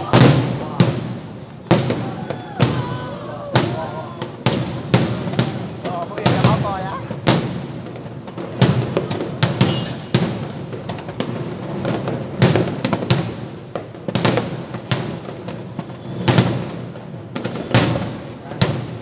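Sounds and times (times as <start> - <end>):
fireworks bursting: 0.0 - 19.0.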